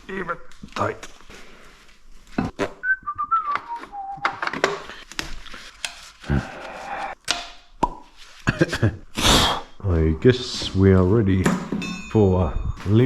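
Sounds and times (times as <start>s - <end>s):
person whistling: 2.8s - 4.5s
handling clicks and knocks: 12.8s - 13.0s.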